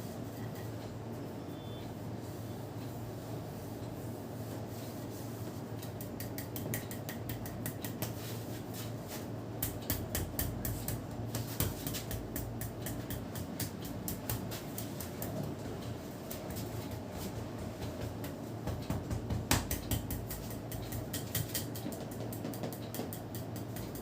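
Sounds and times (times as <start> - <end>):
steady low hum: 0.0 - 24.0
hands slapping in massage: 6.0 - 8.3, 9.6 - 15.4, 17.6 - 24.0.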